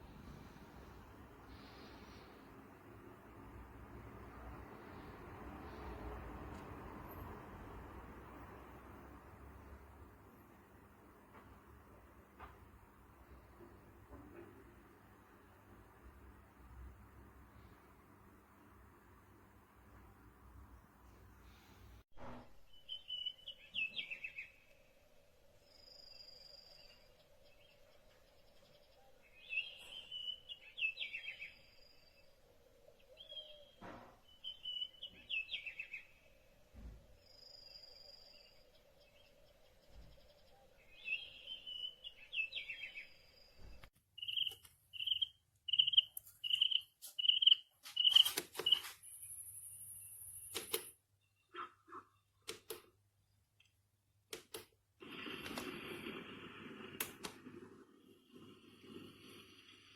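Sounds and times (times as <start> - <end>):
alarm clock birdsong chirps: 25.7 - 32.4, 37.3 - 51.6
clicks: 50.4 - 51.0, 52.4 - 53.0, 53.6 - 55.9.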